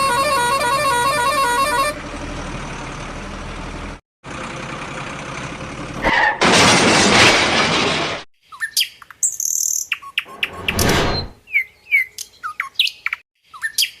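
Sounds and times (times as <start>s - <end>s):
birds chirping: 8.5s - 14.0s.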